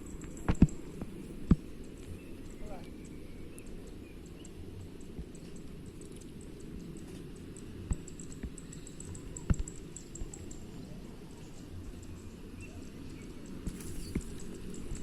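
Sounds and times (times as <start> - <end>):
insect chirps: 0.0 - 15.0.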